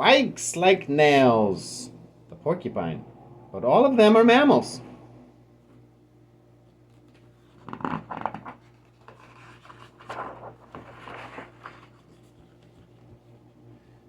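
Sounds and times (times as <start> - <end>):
paper pages turning: 6.9 - 13.4.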